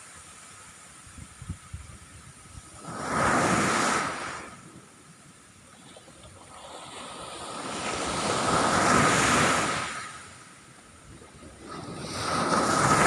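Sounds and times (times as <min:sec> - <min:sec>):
ocean waves breaking: 0:02.6 - 0:13.0.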